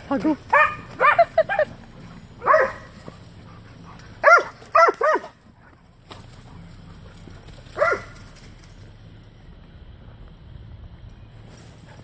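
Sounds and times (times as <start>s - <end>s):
dog barking: 0.5s - 1.7s, 2.4s - 3.0s, 4.2s - 5.4s, 7.8s - 8.2s.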